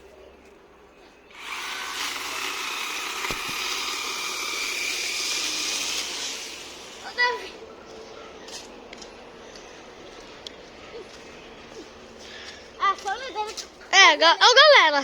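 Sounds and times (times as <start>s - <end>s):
chainsaw motor whining: 1.3s - 7.6s.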